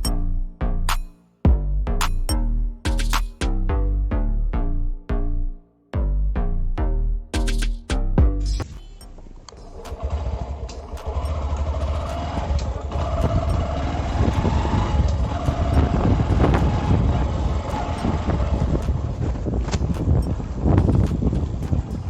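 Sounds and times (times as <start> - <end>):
motorcycle engine rumbling: 8.3 - 22.0.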